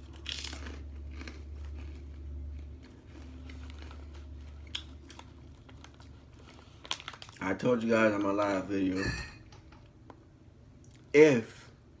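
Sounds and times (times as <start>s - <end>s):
person chewing food: 0.0s - 7.4s
steady low hum: 0.0s - 12.0s.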